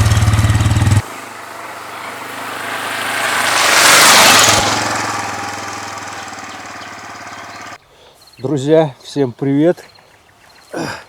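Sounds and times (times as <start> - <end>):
vehicle engine running loudly: 0.0 - 7.8
vehicle passing by: 0.0 - 7.8.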